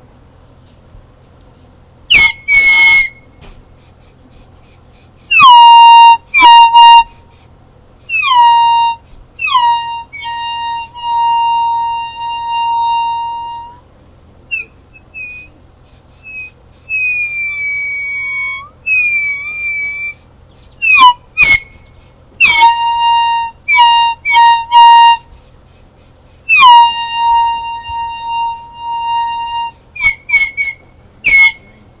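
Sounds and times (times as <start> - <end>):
air horn blasts: 5.3 - 7.4, 8.1 - 13.8, 20.8 - 25.4, 26.5 - 32.0.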